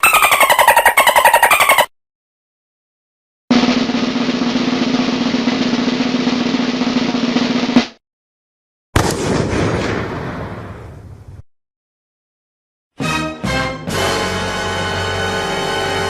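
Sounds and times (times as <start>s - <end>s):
snare drum roll: 3.5s - 8.0s.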